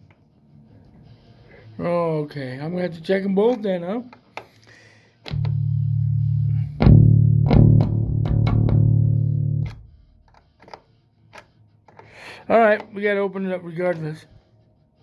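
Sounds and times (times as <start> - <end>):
bass guitar notes: 5.3 - 10.1.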